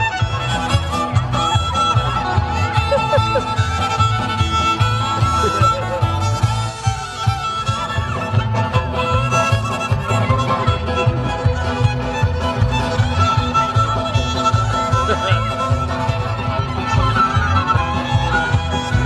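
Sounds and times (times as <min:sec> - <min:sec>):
upbeat fiddle music over beat: 0:00.0 - 0:19.0.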